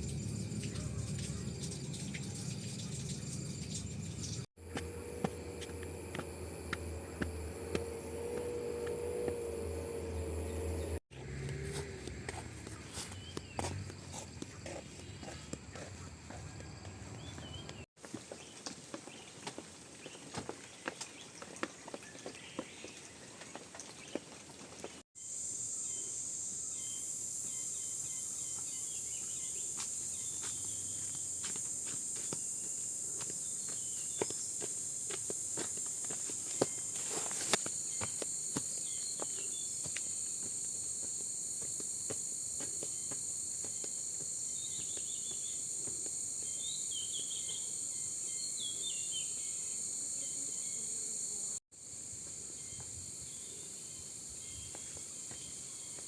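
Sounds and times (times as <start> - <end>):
high-pitched insect chorus: 0.0 - 4.5, 25.2 - 56.0.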